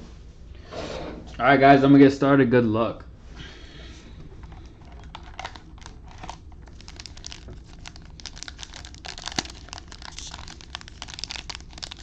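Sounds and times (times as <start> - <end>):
plastic wrapping crinkling and tearing: 4.4 - 12.0.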